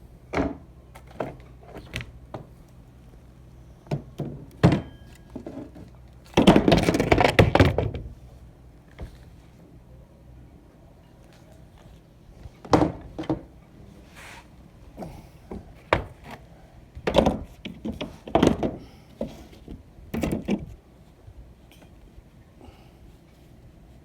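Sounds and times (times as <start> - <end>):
knocks and thuds on wood: 0.3 - 2.5, 6.4 - 8.0, 12.6 - 13.5, 15.0 - 16.3, 17.0 - 20.7.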